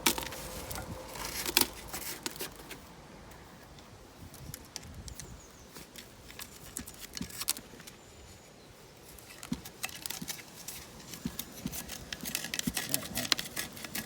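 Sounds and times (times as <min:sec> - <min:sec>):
hand tool scraping metal: 0:11.6 - 0:14.0.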